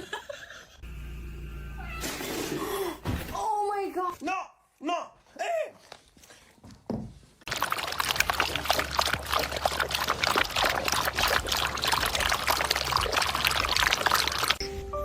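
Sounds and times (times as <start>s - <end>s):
water pouring and splashing: 7.5s - 14.6s.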